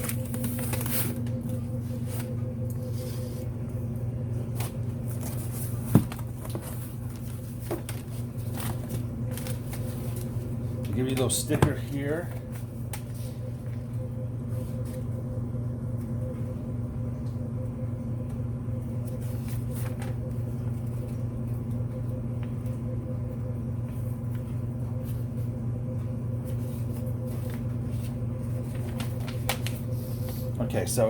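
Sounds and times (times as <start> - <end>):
low mechanical hum: 0.0 - 31.0
paper or packaging rustling: 26.6 - 30.5.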